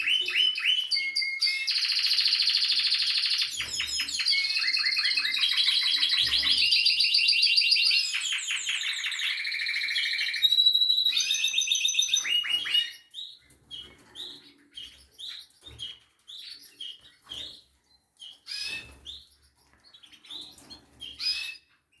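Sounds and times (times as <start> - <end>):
canary trilling: 0.0 - 21.9
canary chirps: 0.0 - 22.0.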